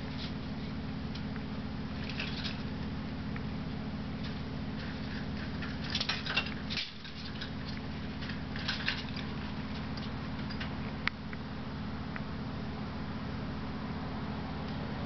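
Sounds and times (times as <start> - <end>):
steady low hum: 0.0 - 15.0
cats tapping and rattling objects: 2.0 - 2.7, 4.2 - 10.8.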